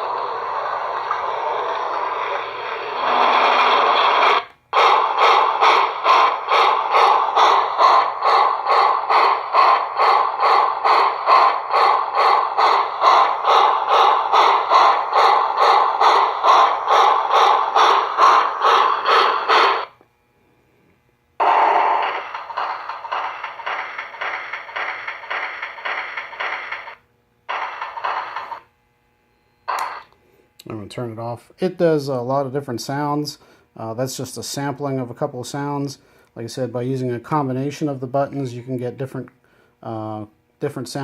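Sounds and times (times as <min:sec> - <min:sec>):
steam hiss: 0:00.0 - 0:19.9, 0:21.4 - 0:28.6, 0:29.7 - 0:30.1
steam locomotive chuffing: 0:00.0 - 0:20.0, 0:21.4 - 0:28.7, 0:29.7 - 0:30.1.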